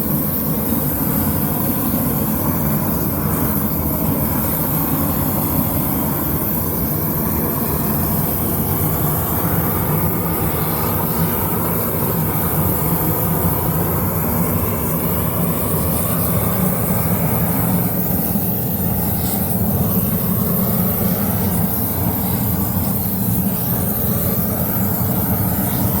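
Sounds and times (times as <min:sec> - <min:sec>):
roofing burner flame rushing: 0:00.0 - 0:26.0.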